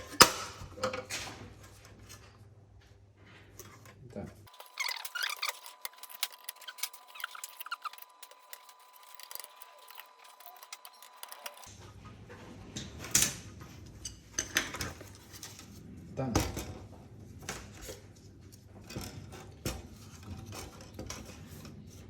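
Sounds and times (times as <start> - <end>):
small parts clicking and scraping: 4.4 - 11.7.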